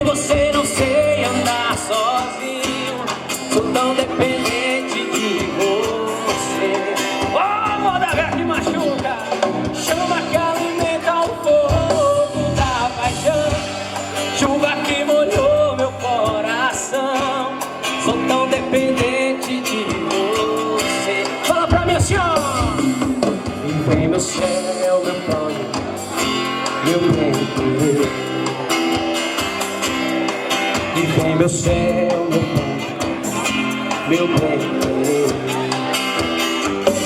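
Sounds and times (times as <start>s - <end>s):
guitar: 0.0s - 37.0s
live band playing: 0.0s - 37.0s
sung melodic lead line: 0.0s - 37.0s.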